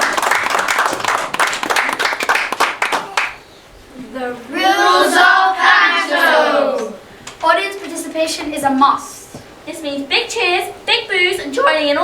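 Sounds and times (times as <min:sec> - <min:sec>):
audience applause: 0:00.0 - 0:03.4.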